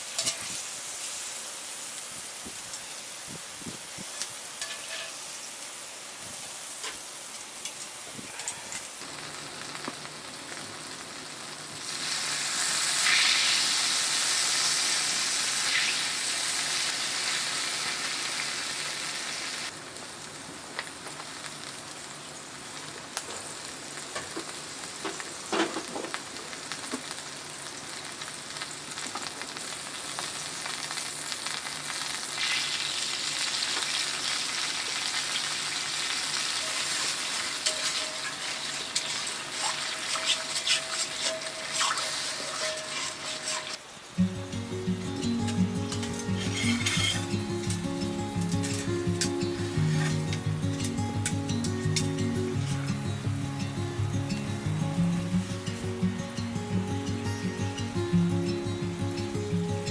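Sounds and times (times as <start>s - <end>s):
food sizzling in a frying pan: 0.0s - 8.0s, 9.0s - 43.8s, 45.6s - 47.8s.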